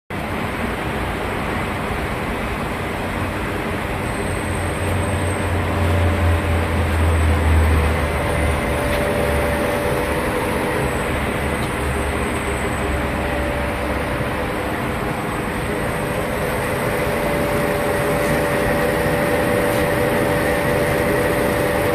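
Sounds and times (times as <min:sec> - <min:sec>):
faint steady whine: 0:02.1 - 0:21.9
band saw running: 0:04.7 - 0:21.9.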